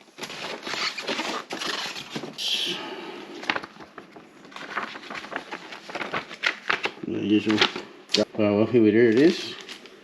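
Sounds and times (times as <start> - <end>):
packaging rustling and scraping: 0.0 - 2.7, 3.3 - 7.9.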